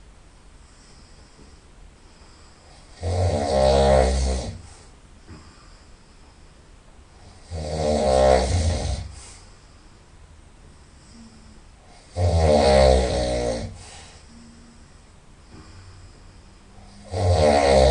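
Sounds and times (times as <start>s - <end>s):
person snoring loudly: 2.7s - 4.7s, 7.2s - 9.2s, 11.9s - 14.0s, 16.8s - 17.9s.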